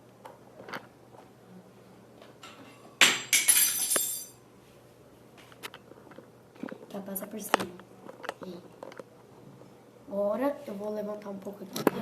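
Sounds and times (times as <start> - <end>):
kitchenware clinking and ringing: 2.5 - 4.4.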